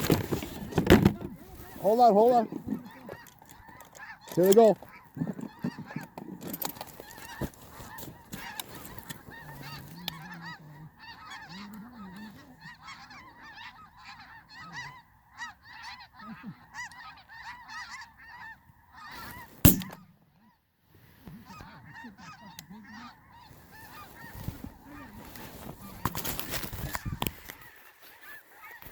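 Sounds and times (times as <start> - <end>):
geese honking: 0.0 - 28.9.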